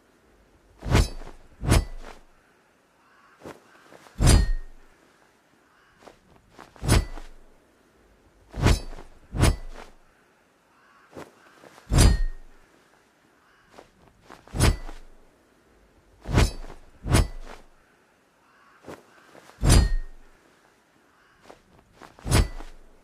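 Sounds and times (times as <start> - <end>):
sword striking with metallic ring: 4.2 - 4.8, 11.9 - 12.6, 19.6 - 20.3, 22.3 - 22.8.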